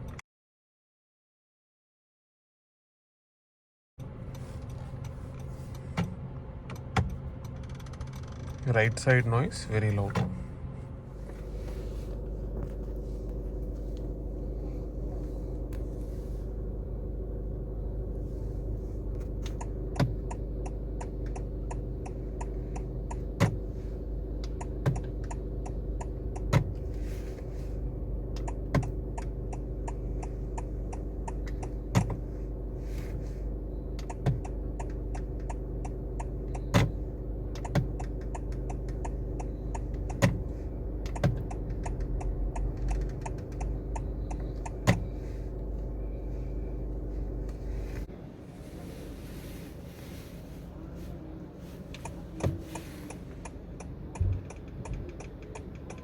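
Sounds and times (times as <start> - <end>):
steering crackling and clicking: 4.0 - 10.4, 11.1 - 48.1, 48.8 - 56.0
engine hum: 4.0 - 56.0
indicator clicking: 33.9 - 40.4, 41.0 - 45.2.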